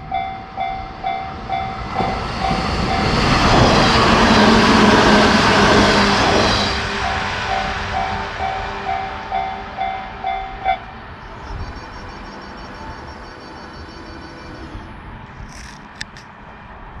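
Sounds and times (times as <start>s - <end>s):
train rumbling on rails: 0.0s - 17.0s
faint high whine: 8.2s - 15.2s.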